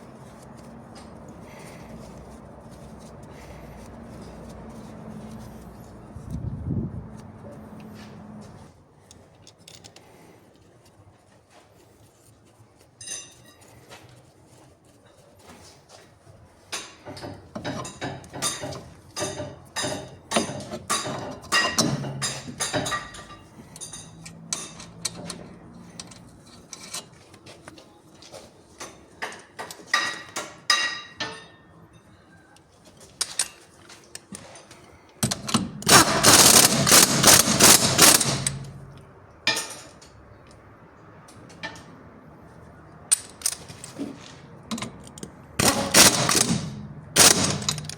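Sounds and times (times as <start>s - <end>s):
tools clinking on metal: 13.0s - 13.7s, 16.8s - 27.4s, 28.8s - 32.2s, 33.0s - 40.2s, 43.1s - 47.9s
loud rasping burst: 35.8s - 39.0s, 45.6s - 47.9s.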